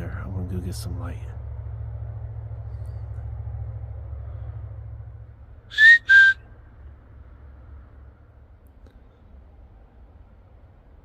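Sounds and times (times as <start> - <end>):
loud whistled notes: 5.7 - 6.5.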